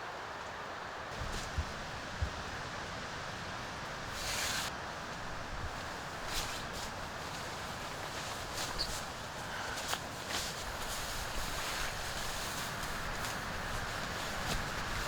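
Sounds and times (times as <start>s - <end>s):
wind: 0.0s - 15.0s
light knocks and rustles: 4.2s - 15.0s.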